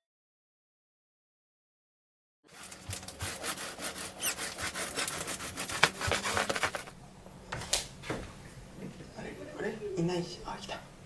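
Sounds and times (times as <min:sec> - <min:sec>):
scratching on a rough surface: 0:02.5 - 0:07.0.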